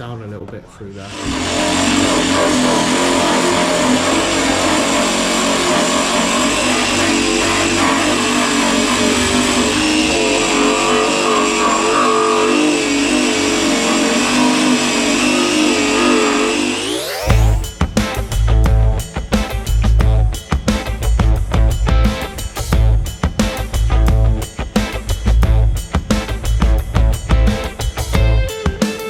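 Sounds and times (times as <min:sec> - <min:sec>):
power tool grinding metal: 0:00.9 - 0:28.2.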